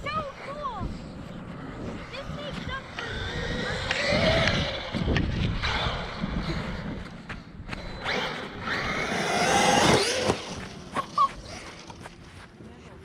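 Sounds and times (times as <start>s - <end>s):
tyre and dirt noise: 0.0s - 13.0s
electric motor whining: 1.5s - 12.0s.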